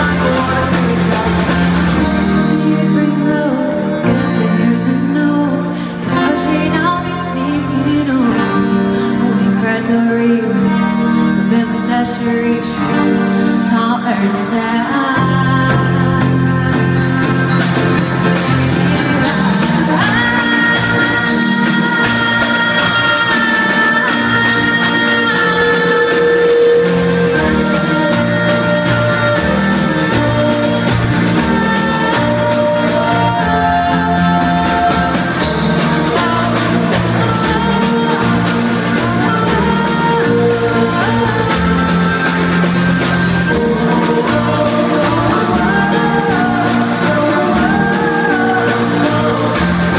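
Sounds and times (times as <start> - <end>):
guitar: 0.0 - 49.9
person singing long notes: 18.5 - 49.9.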